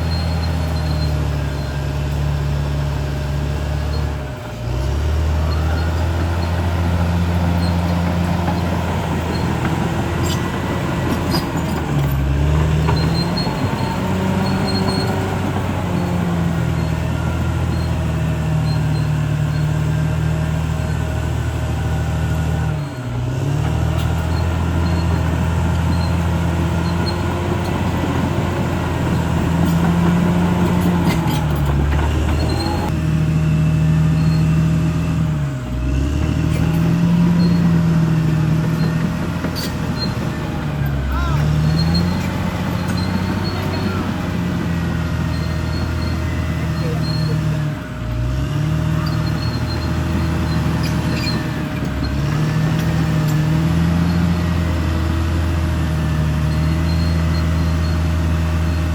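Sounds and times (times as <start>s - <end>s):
bulldozer diesel engine: 0.0s - 58.9s.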